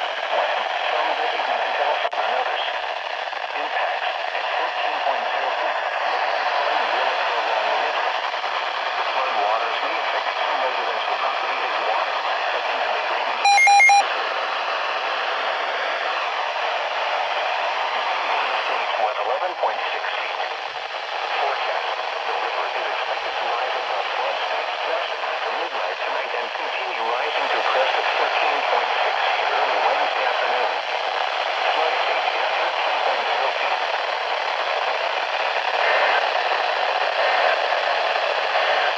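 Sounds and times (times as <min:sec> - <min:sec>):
electronic beep pulses: 0:13.5 - 0:14.0.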